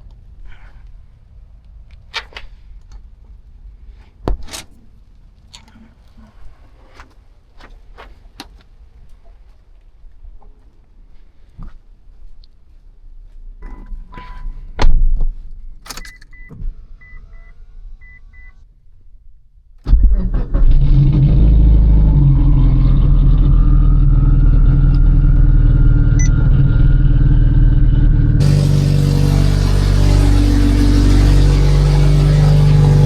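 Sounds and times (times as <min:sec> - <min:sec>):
car engine starting and idling: 0:19.8 - 0:33.0
turbo whine: 0:19.9 - 0:33.0.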